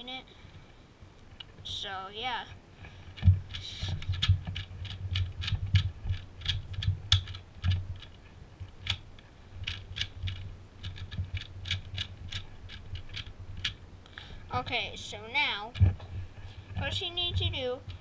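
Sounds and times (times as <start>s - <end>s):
puzzle cube layers clicking: 3.5s - 9.0s, 9.6s - 13.8s.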